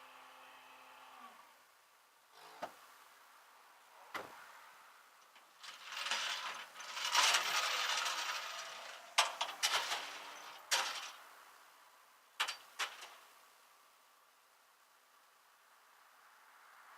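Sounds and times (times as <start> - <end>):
metallic rattling: 5.3 - 11.2, 12.4 - 13.3.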